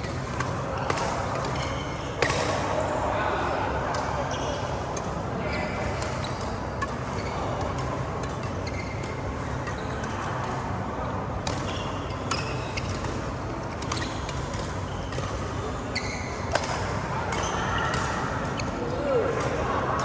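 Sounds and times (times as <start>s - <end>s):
rackets striking shuttlecock: 0.0s - 2.6s, 11.4s - 18.5s
steady background noise: 0.0s - 20.0s.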